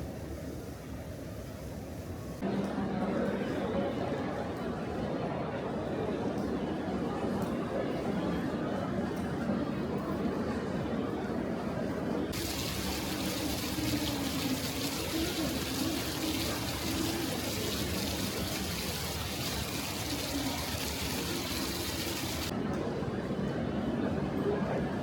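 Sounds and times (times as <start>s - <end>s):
murmur of voices: 2.4s - 25.0s
running water hissing: 12.4s - 22.5s.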